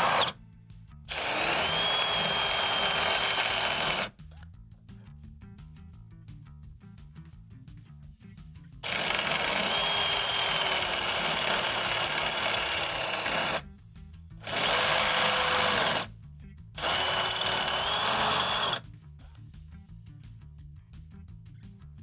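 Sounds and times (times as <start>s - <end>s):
electric drill whining: 0.0s - 0.3s, 1.1s - 4.1s, 8.8s - 13.6s, 14.4s - 16.1s, 16.8s - 18.8s.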